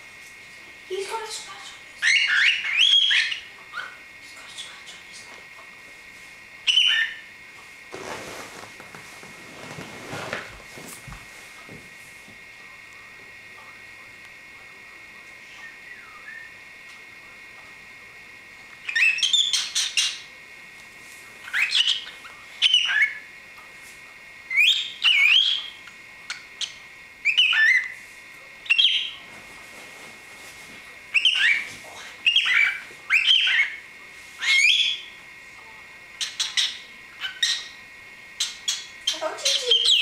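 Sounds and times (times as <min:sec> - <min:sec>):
cockatiel chirping: 0:02.0 - 0:04.8, 0:06.7 - 0:07.2, 0:18.8 - 0:20.2, 0:21.4 - 0:23.2, 0:24.5 - 0:28.0, 0:28.6 - 0:29.2, 0:31.1 - 0:33.8, 0:34.4 - 0:35.2, 0:36.2 - 0:37.8, 0:38.4 - 0:40.0.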